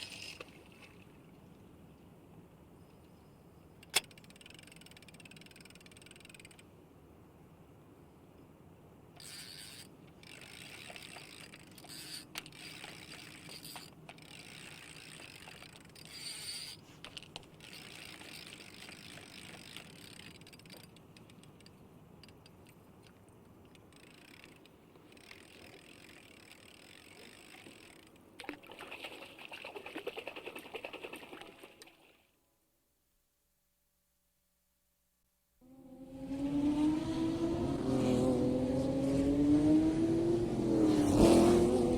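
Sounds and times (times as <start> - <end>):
water lapping: 0.0 - 2.0, 28.4 - 32.2
fishing reel ratchet clicking: 3.8 - 6.7, 9.2 - 16.8, 17.6 - 22.6, 23.7 - 28.2.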